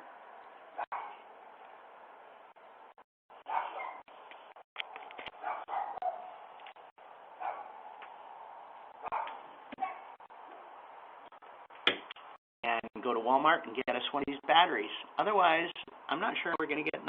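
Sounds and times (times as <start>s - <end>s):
dog barking: 0.8s - 1.2s, 3.4s - 4.1s, 5.4s - 6.4s, 7.4s - 7.8s, 9.0s - 10.1s.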